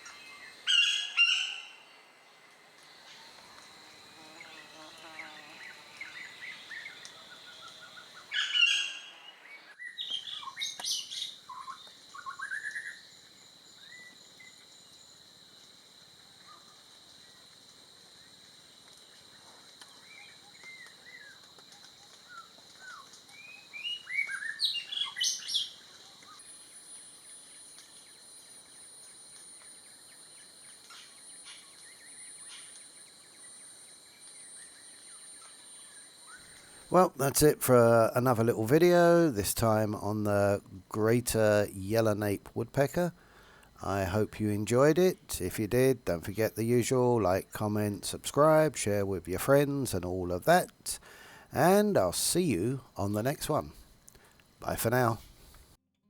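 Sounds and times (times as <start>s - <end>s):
woodpecker calling: 0.0s - 2.0s, 4.4s - 13.0s.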